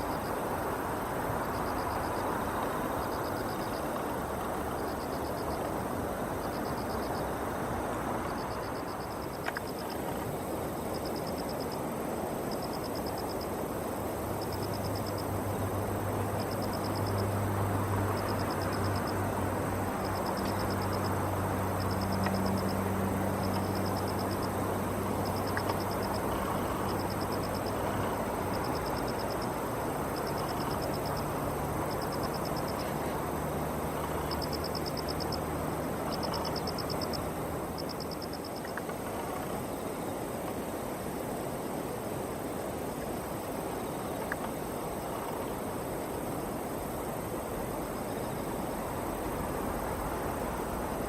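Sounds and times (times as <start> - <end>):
insect chirping in trills: 0.0 - 51.0.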